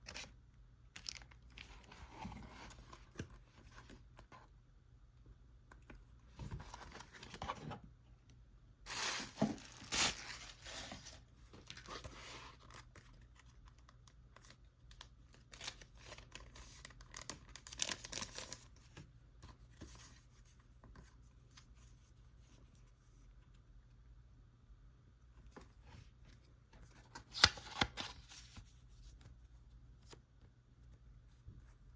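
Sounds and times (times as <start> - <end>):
packaging tearing and rustling: 8.9 - 11.1.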